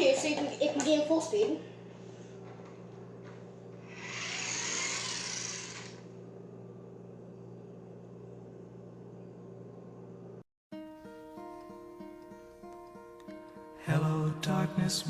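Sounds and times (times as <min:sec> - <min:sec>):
toy car motor whirring: 0:03.8 - 0:06.0.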